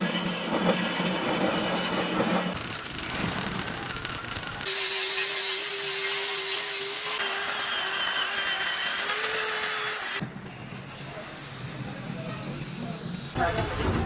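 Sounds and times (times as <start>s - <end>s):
electric power tool whine: 0.0s - 10.2s.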